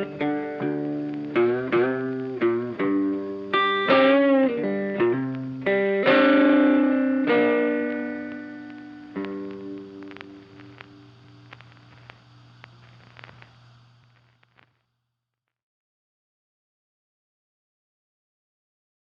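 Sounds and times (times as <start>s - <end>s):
electric guitar slow melody: 0.0s - 13.8s.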